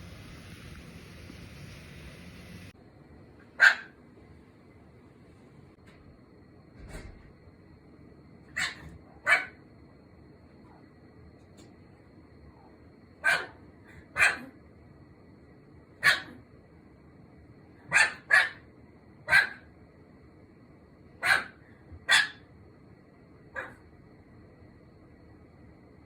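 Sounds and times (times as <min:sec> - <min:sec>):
small dog barking: 0:03.5 - 0:04.0, 0:08.5 - 0:09.6, 0:12.6 - 0:14.6, 0:16.0 - 0:16.4, 0:17.8 - 0:19.7, 0:21.2 - 0:22.5, 0:23.5 - 0:23.9.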